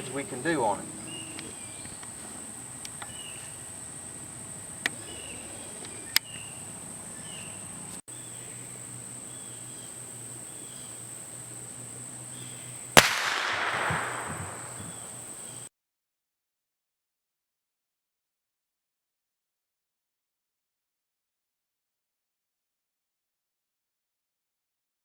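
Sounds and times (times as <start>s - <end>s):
high insect buzz: 0.1s - 15.7s
rifle shot with echo: 13.0s - 15.1s.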